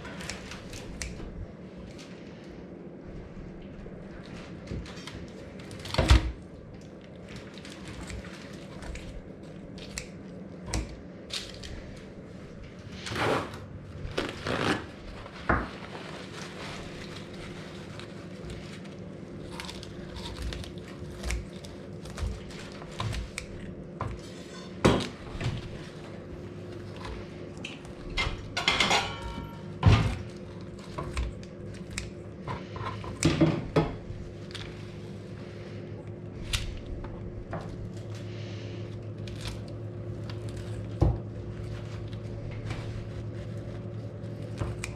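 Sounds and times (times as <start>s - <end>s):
steady low hum: 0.0s - 44.9s
dishes and pans clattering: 28.2s - 29.7s.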